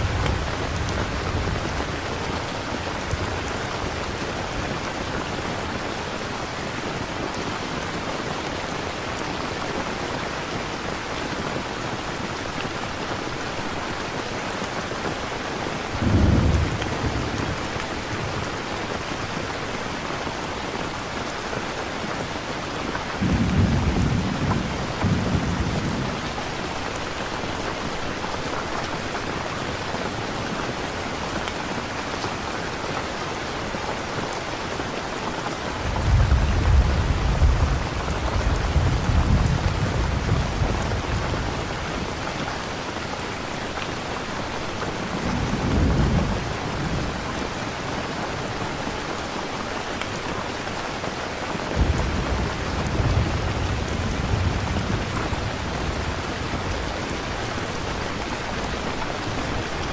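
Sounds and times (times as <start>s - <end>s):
low rolling thunder: 0.0s - 4.2s, 16.0s - 17.8s, 23.2s - 26.4s, 35.8s - 41.7s, 45.0s - 47.2s, 51.8s - 58.2s
steady rain falling: 0.0s - 59.9s.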